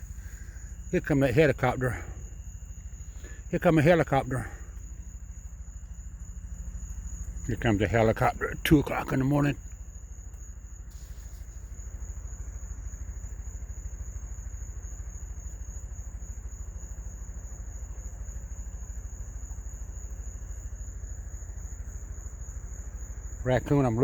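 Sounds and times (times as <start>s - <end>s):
crickets trilling: 0.0s - 24.0s.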